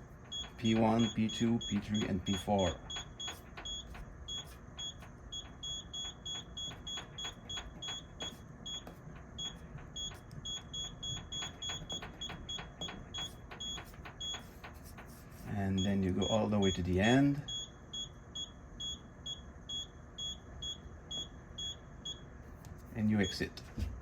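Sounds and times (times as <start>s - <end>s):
dishwasher control panel beeping: 0.3s - 14.5s.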